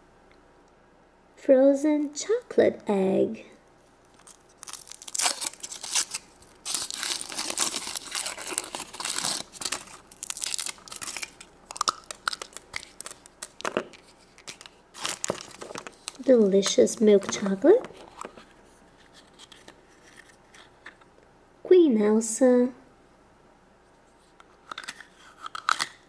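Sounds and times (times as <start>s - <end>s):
foil wrapper tearing and crinkling: 4.1s - 18.5s, 24.9s - 26.0s.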